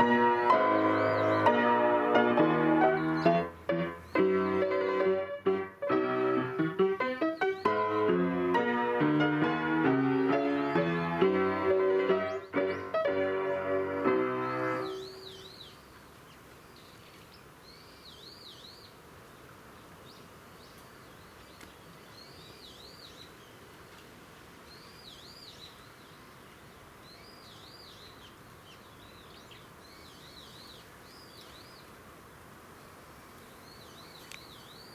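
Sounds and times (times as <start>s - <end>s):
piano chord: 0.0s - 15.4s
faint steady hiss: 0.0s - 34.9s
small birds singing: 0.0s - 34.9s.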